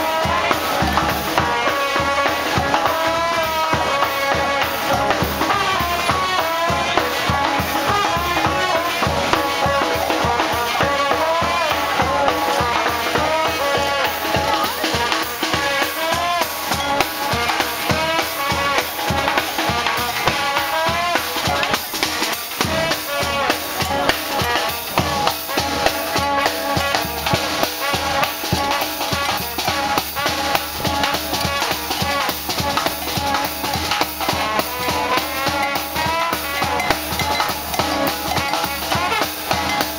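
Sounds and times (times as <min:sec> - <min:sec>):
drum kit beat: 0:00.0 - 0:39.9
street band playing: 0:00.0 - 0:39.9.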